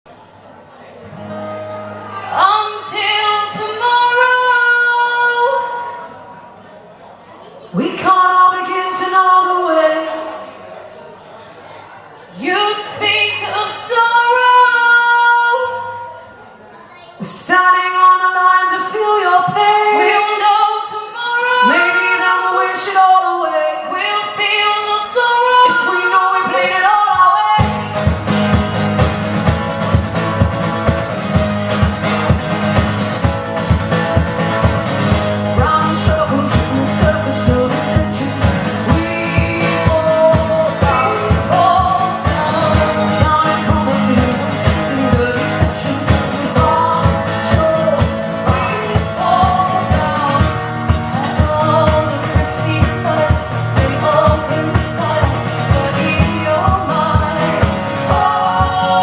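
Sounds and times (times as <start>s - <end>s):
folk-pop accompaniment with beat: 27.6s - 59.0s
female duo singing in harmony: 35.6s - 59.0s.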